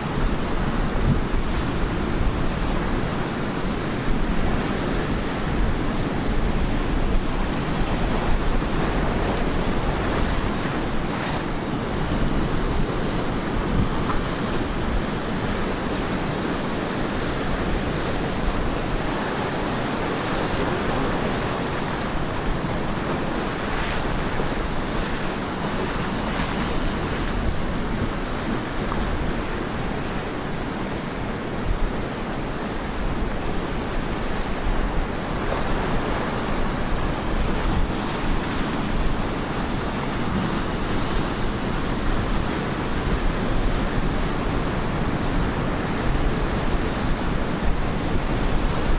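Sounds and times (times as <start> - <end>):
ocean waves breaking on beach: 0.0 - 48.9
wind on microphone: 0.0 - 48.9.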